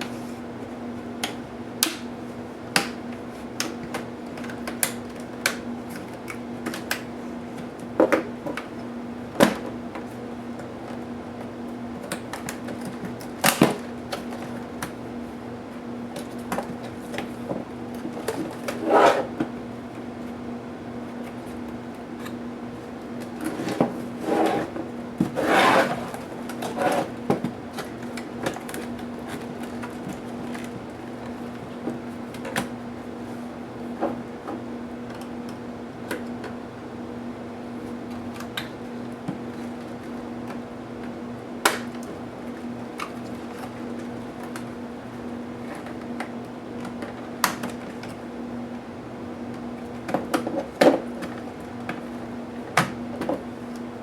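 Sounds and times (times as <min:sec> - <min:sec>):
scraping and rubbing of parts: 0:25.4 - 0:27.1.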